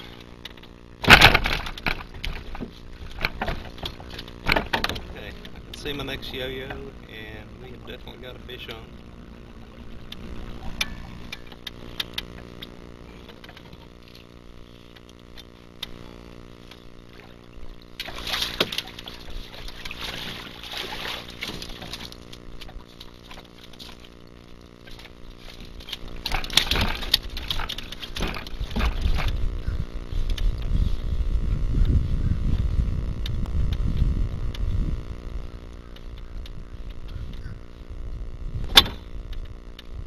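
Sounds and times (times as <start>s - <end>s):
water splashing and sloshing: 0.0s - 7.0s, 9.1s - 31.0s
fish thrashing at surface: 18.0s - 24.2s.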